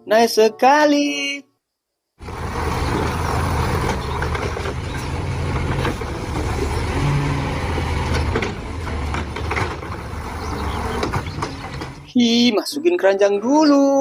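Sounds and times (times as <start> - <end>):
heavy engine rumble: 2.2 - 12.2.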